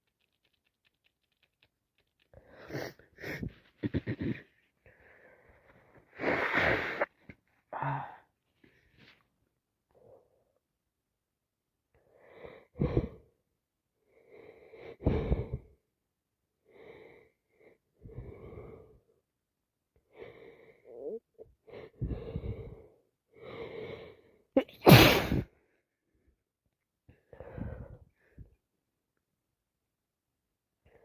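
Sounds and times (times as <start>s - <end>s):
woman sneezing: 24.6s - 25.4s.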